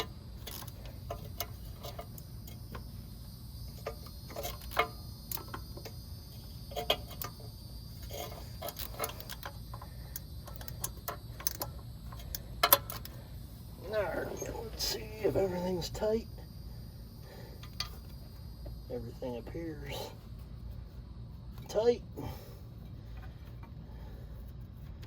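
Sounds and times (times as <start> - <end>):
steady low hum: 0.0 - 25.0
hand tools clicking on metal: 6.7 - 13.2.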